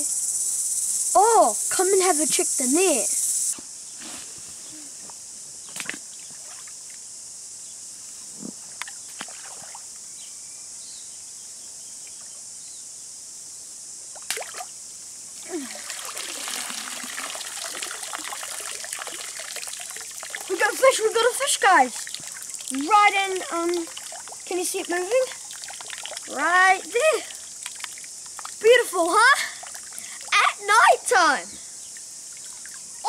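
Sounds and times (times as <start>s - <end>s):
water trickling and sloshing: 5.7s - 7.0s, 8.8s - 10.0s, 15.4s - 30.4s, 31.2s - 33.0s.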